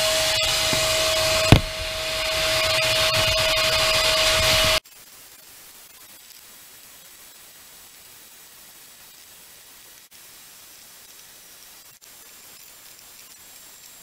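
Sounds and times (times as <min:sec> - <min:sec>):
vacuum whining: 0:00.0 - 0:04.8
sharp knock: 0:00.7 - 0:02.0
faint hiss: 0:04.8 - 0:14.0.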